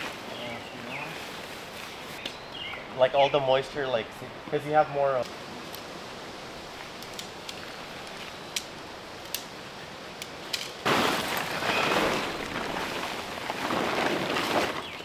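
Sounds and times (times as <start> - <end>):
loud rustling and crunching: 10.3 - 15.0.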